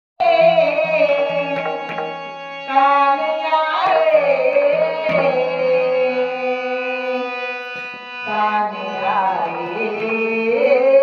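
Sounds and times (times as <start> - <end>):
hand drum strokes: 0.4 - 2.5
held drone accompaniment: 0.4 - 11.0
devotional singing: 8.2 - 11.0.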